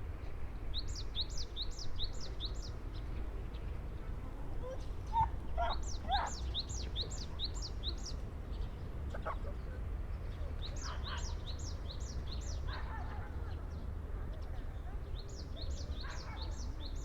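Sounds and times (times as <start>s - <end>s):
songbirds singing: 4.7s - 9.5s, 10.2s - 13.0s.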